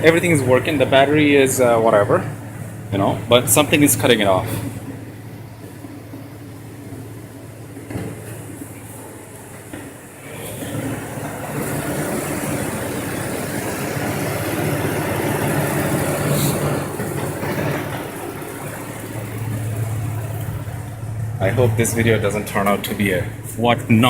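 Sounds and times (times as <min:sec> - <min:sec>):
car engine idling: 0:00.0 - 0:24.0
rough engine revving: 0:10.2 - 0:24.0.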